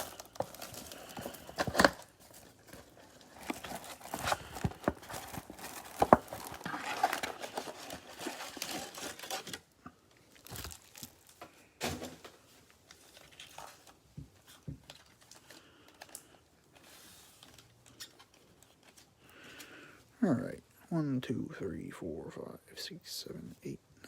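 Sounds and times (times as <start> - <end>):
cards clicking and rustling: 0.0 - 9.6
plastic wrapper crinkling and tearing: 0.0 - 11.5, 12.6 - 19.2.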